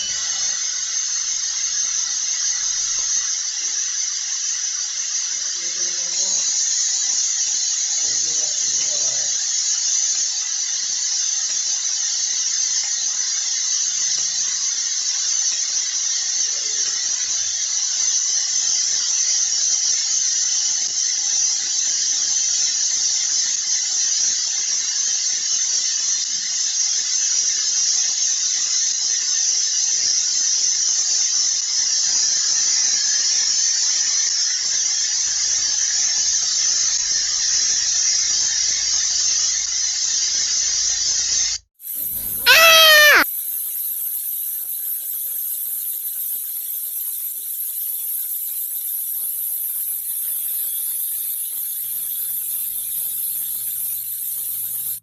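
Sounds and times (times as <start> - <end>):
faint thin tone: 0.0 - 1.0
high-pitched hissing: 0.0 - 8.0, 41.8 - 55.0.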